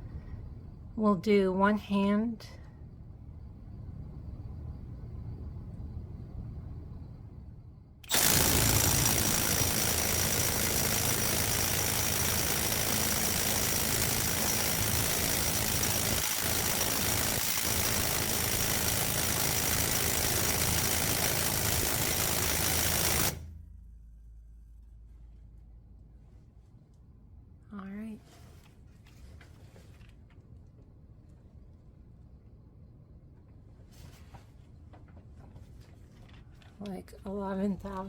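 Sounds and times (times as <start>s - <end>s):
high motor whine: 8.0s - 23.6s
impact wrench hammering: 8.0s - 23.6s.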